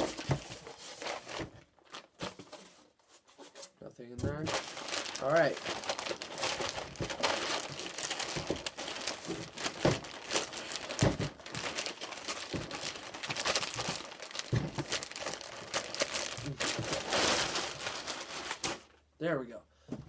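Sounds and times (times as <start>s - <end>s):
packaging crinkling and rustling: 0.0s - 3.6s, 4.2s - 19.1s
dull thumps: 6.9s - 15.3s.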